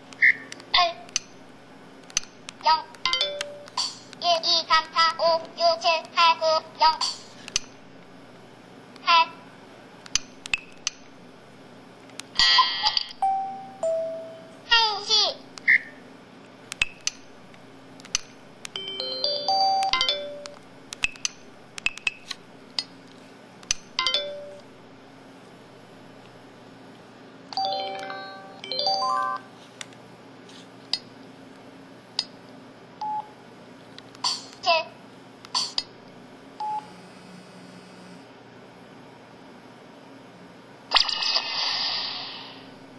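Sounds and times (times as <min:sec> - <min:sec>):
phone chime rising notes: 0:13.2 - 0:14.6, 0:27.6 - 0:29.5
electronic clicks: 0:19.8 - 0:22.3.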